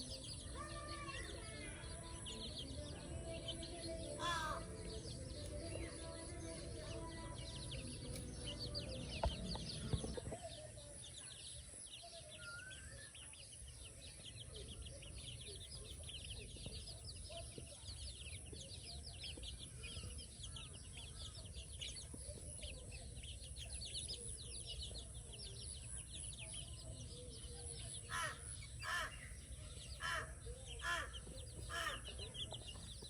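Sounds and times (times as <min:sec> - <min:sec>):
baby chicks peeping: 0:00.0 - 0:33.0
crow cawing: 0:04.2 - 0:04.6, 0:28.1 - 0:29.2, 0:30.0 - 0:31.1, 0:31.7 - 0:32.1.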